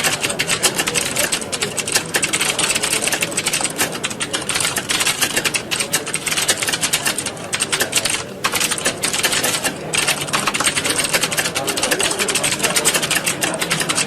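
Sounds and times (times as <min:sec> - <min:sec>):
many keyboards typing: 0:00.0 - 0:14.0.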